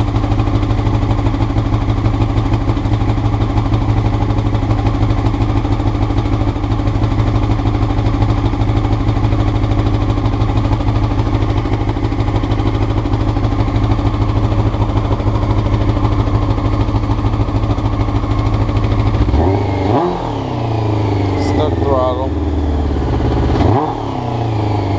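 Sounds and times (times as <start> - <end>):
motorcycle engine idling: 0.0 - 24.9
motorcycle engine revving: 0.0 - 24.9.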